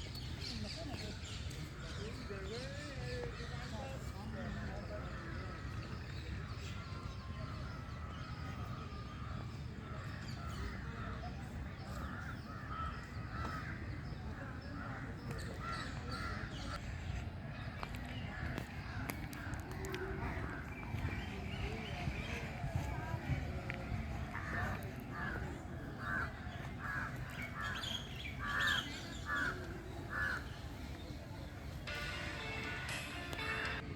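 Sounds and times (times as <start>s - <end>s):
birds calling harshly: 0.0s - 22.9s, 24.1s - 31.8s.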